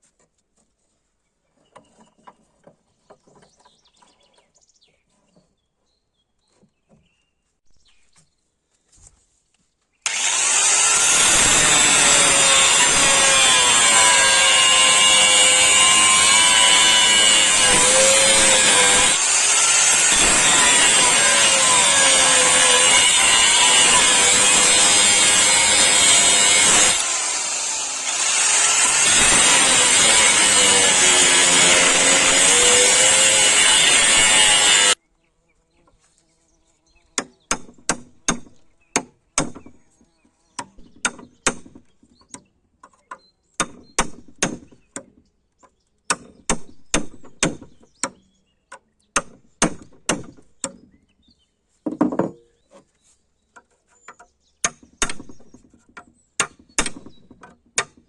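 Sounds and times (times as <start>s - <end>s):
power tool cutting steel: 10.1s - 35.0s.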